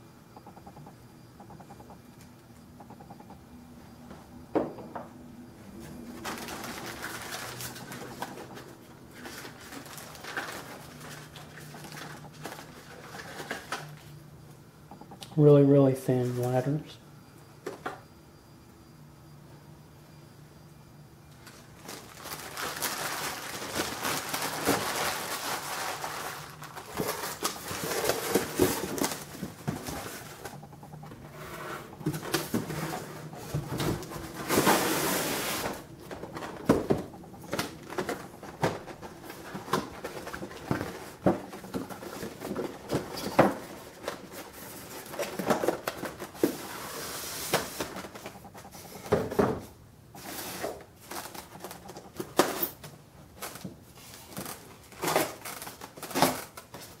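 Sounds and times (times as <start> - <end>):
packaging rustling: 6.0 - 14.0, 21.4 - 31.3, 32.0 - 48.7, 50.2 - 57.0.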